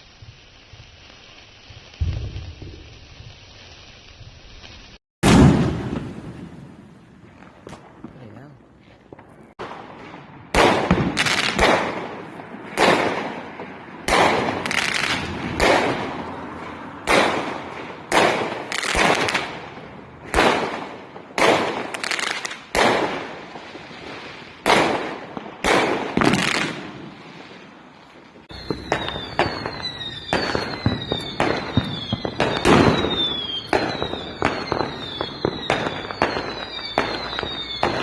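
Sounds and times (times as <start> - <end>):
fireworks bangs with echo: 1.8 - 4.5, 5.2 - 38.0.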